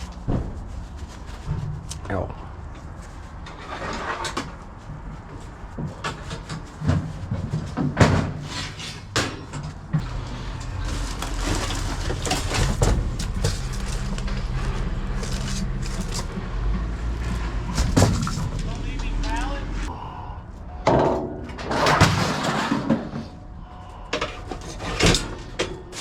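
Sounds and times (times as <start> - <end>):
knocks and clatter: 3.4 - 19.4
steady low hum: 9.8 - 26.0.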